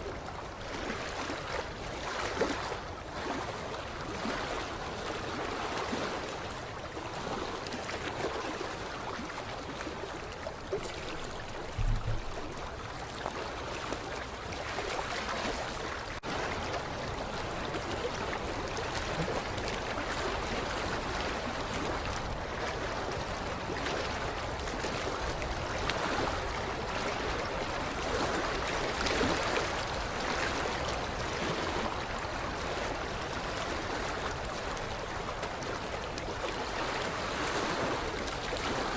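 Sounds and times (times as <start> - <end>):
water lapping against shoreline: 0.0 - 38.9
low thump: 11.7 - 12.7.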